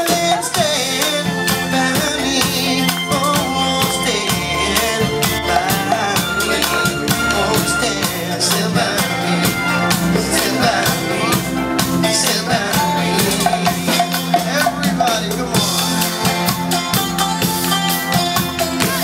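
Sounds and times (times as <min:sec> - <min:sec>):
drums beating: 0:00.0 - 0:19.0
street band playing upbeat music: 0:00.0 - 0:19.0.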